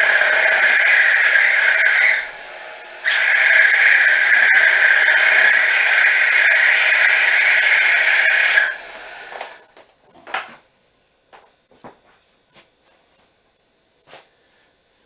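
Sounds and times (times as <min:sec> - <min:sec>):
high-pitched screech of milling cut: 0:00.0 - 0:08.8.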